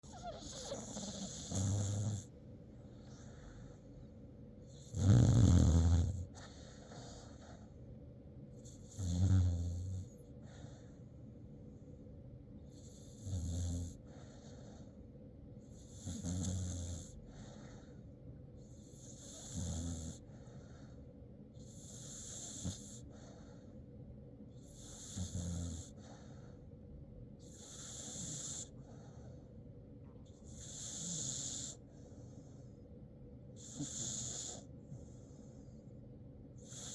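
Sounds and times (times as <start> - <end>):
pet snoring: 0.0 - 4.0, 4.6 - 7.8, 8.6 - 11.0, 12.7 - 15.0, 15.6 - 18.0, 18.6 - 21.0, 21.6 - 23.7, 24.6 - 26.6, 27.4 - 29.4, 30.3 - 32.1, 33.6 - 34.8, 36.6 - 36.9.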